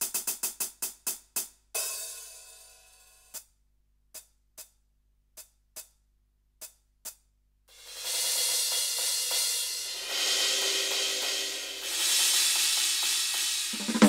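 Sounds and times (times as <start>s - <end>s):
sustained cymbal wash: 7.8s - 14.0s.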